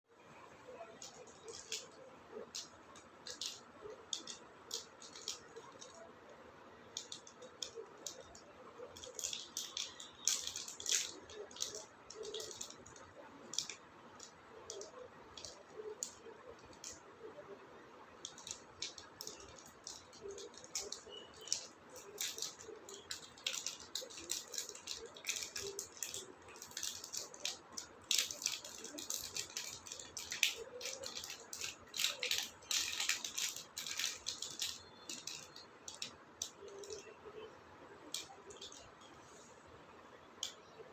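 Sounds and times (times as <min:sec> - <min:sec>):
chocolate wrapper crinkling: 0:00.9 - 0:06.0, 0:08.9 - 0:13.8, 0:18.3 - 0:37.2.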